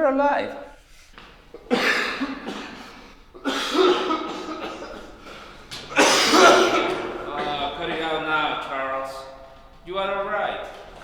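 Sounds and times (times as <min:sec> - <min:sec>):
man coughing: 0:01.2 - 0:09.8.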